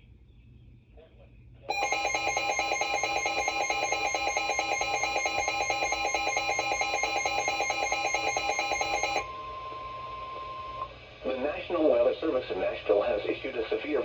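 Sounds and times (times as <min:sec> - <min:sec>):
weather radio alarm beeping: 0:01.7 - 0:09.9
steady warning tone: 0:01.7 - 0:10.9.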